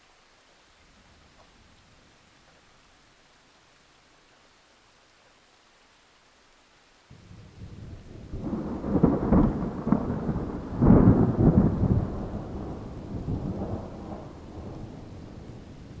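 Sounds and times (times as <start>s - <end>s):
rolling thunder: 7.2s - 16.0s.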